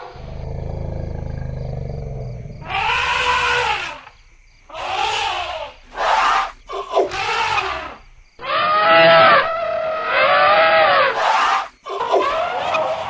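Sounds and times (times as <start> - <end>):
elephants trumpeting: 0.0 - 4.1.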